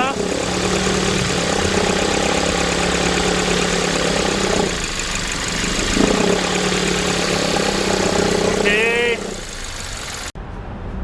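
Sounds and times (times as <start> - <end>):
car engine idling: 0.0 - 10.4.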